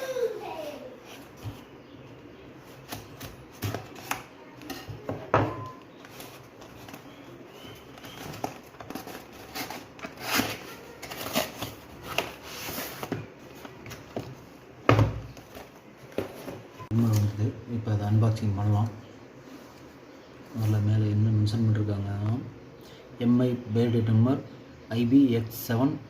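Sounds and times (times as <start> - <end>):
hands handling parcel packaging: 5.7 - 14.4.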